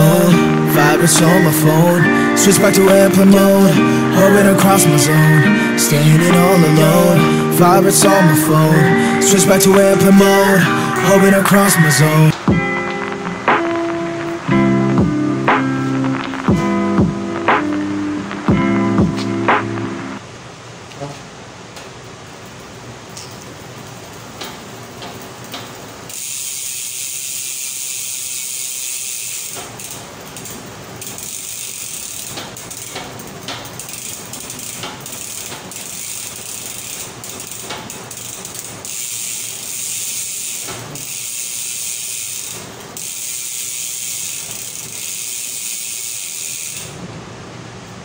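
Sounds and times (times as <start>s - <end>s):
rapid mechanical ratcheting: 23.4s - 47.0s.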